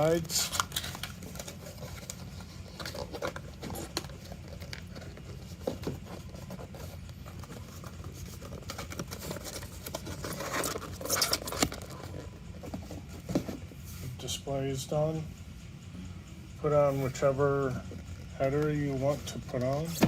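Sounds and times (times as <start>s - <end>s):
cardboard scraping and knocking: 1.4s - 13.7s.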